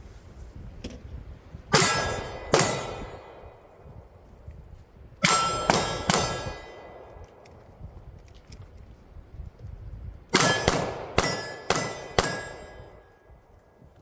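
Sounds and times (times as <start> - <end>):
steel targets clanging: 1.7 - 3.4, 5.2 - 7.0, 10.4 - 13.2
pistol shots: 1.7 - 3.7, 5.2 - 7.4, 10.3 - 13.2.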